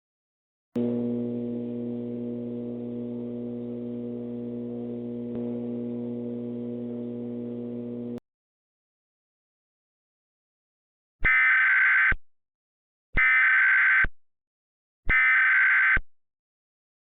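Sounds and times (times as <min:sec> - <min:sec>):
steady low-pitched hum: 0:00.8 - 0:08.2.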